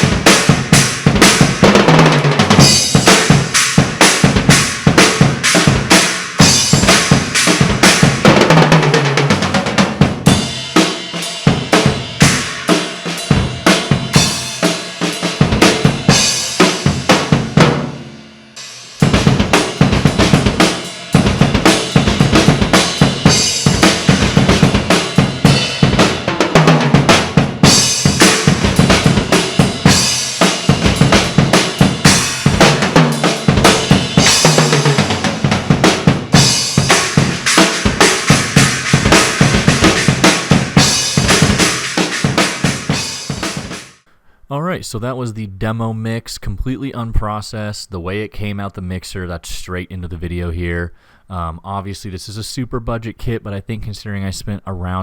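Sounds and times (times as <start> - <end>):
drum kit played fast: 0.0 - 44.1
cymbal crashes: 27.0 - 44.0.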